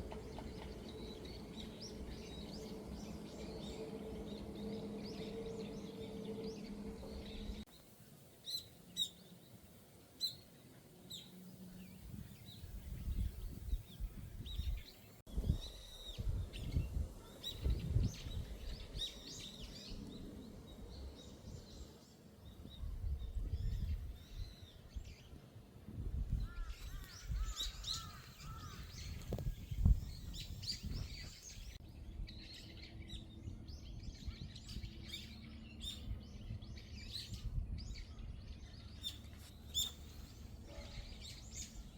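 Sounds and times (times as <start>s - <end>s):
low rumbling: 0.0s - 7.7s
steady low hum: 0.0s - 7.7s
small birds chirping: 0.0s - 25.4s, 26.3s - 41.9s.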